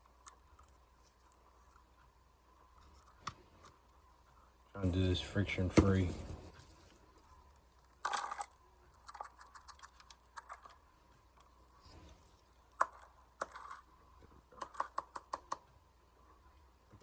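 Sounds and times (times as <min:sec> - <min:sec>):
scratching and sharp clicks: 0:14.5 - 0:15.8.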